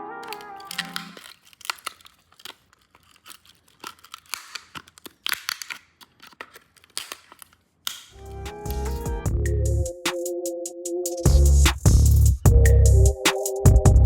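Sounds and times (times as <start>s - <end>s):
plastic parts clicking and scraping: 0.2s - 8.2s.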